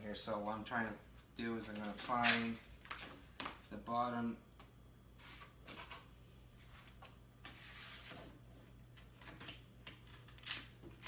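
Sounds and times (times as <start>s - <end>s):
vinyl film rustling and scraping: 1.6s - 3.6s, 5.2s - 11.0s.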